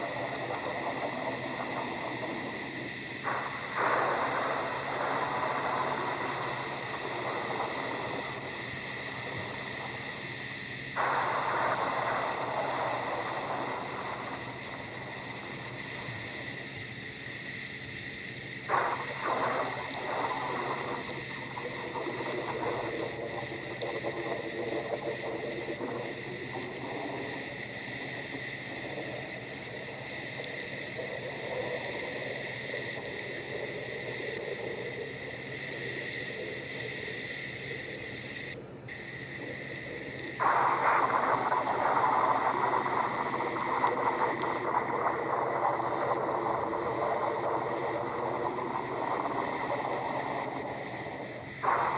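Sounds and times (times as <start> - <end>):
rain-like hiss: 0.0 - 51.9
eerie sustained tones: 18.6 - 51.9.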